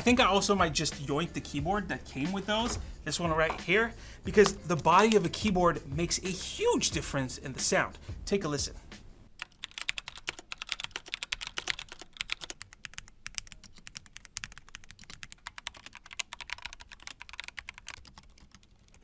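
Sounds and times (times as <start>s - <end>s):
soft fast keyboard typing: 9.4s - 19.0s.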